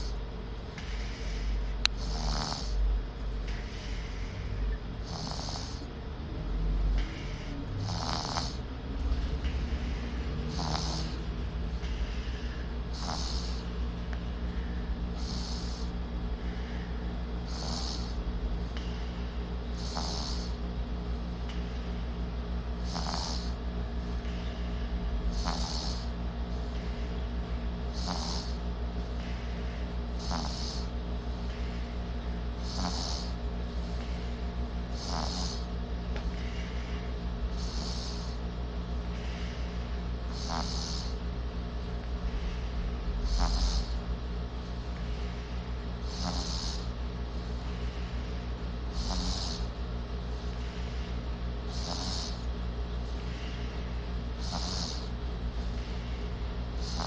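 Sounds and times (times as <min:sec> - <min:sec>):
person snoring: 0:00.0 - 0:00.2, 0:00.8 - 0:02.9, 0:03.5 - 0:13.7, 0:14.5 - 0:16.7, 0:17.4 - 0:19.0, 0:19.7 - 0:20.6, 0:22.8 - 0:23.6, 0:25.3 - 0:27.0, 0:27.9 - 0:28.6, 0:30.2 - 0:31.9, 0:32.6 - 0:36.8, 0:37.5 - 0:38.4, 0:40.3 - 0:41.2, 0:42.4 - 0:44.0, 0:46.0 - 0:46.9, 0:48.9 - 0:49.7, 0:51.7 - 0:52.5, 0:54.4 - 0:55.1, 0:56.8 - 0:57.0
steady low hum: 0:00.0 - 0:57.0.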